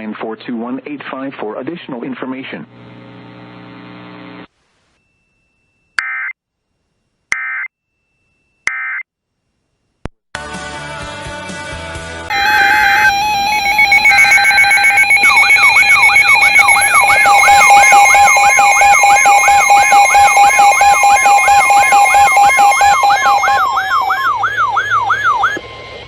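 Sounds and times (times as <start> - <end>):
screechy data bursts: 12.3 - 24.2
steady electronic tone: 12.3 - 24.6
rising electronic whoop: 12.3 - 25.6.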